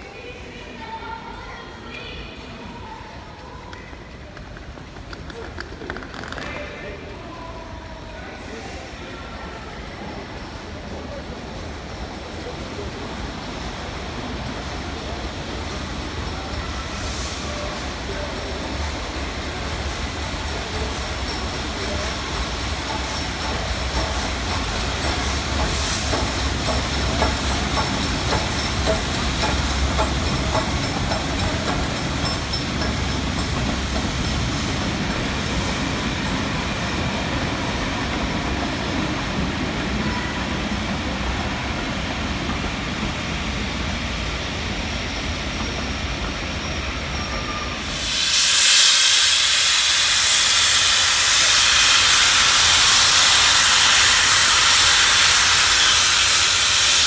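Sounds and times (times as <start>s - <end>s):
train rumbling on rails: 0.0s - 57.0s
wheels clicking over rail joints: 3.7s - 7.0s, 20.4s - 34.4s.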